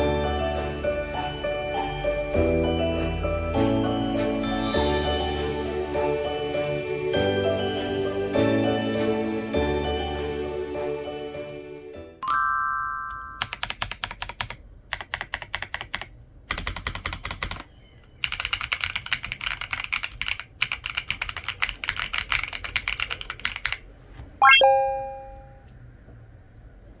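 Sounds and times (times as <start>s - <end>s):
rising chime sound effect: 12.2s - 13.5s, 24.4s - 25.7s
mechanical keyboard typing: 13.1s - 23.9s
short electronic chime: 24.4s - 25.6s.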